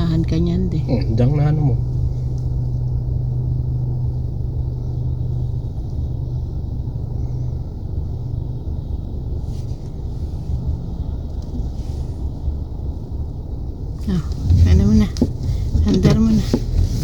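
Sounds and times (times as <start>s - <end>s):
car engine: 0.0s - 17.0s
road rumble inside car: 0.0s - 17.0s.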